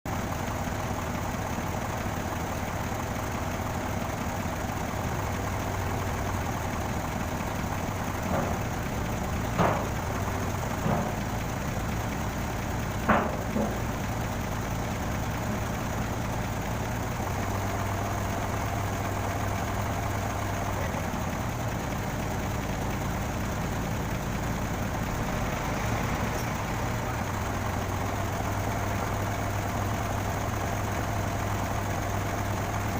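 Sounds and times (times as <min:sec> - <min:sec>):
engine idling: 0:00.1 - 0:32.9
short knocks: 0:08.2 - 0:08.8, 0:09.4 - 0:11.3, 0:13.0 - 0:14.0.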